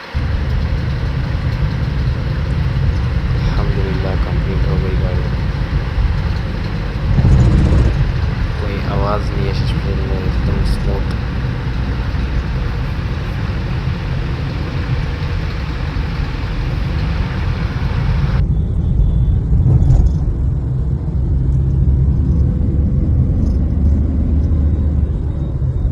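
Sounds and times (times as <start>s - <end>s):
hiss: 0.0s - 18.4s
car engine rumble: 0.0s - 25.9s.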